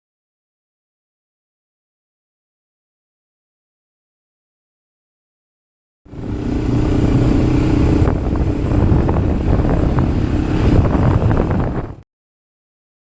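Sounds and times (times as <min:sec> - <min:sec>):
atv engine running: 0:06.1 - 0:12.0.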